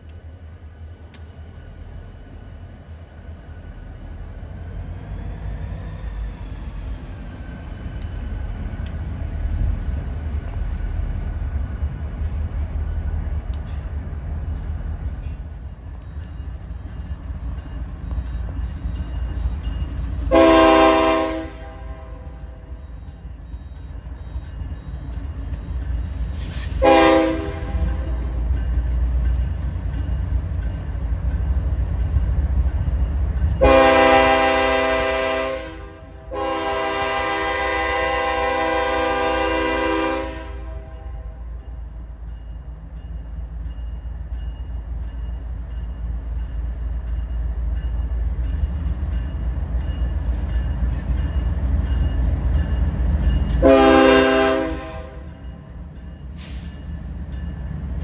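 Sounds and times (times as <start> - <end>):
train rumbling past: 0.0 - 58.0
locomotive horn blasts: 20.3 - 22.6, 26.8 - 28.2, 33.6 - 41.4, 53.5 - 55.3.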